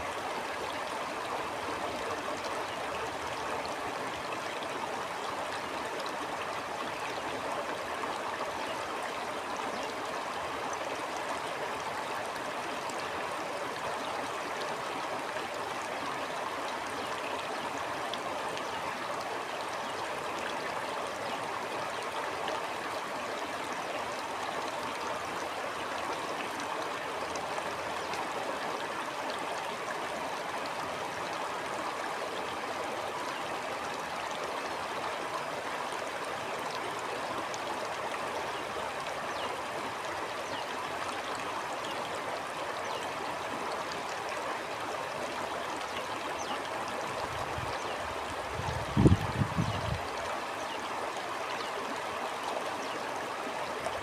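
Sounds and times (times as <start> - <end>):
stream water gurgling: 0.0 - 54.0.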